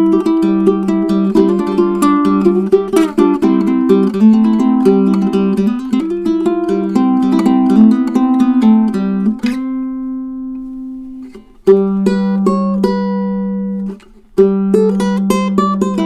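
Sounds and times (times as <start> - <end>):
solo ukulele playing: 0.0 - 16.0.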